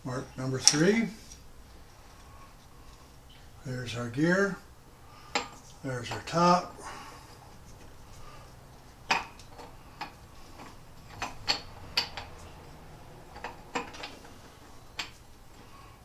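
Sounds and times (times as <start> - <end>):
metal parts clicking and clinking: 9.1 - 15.6.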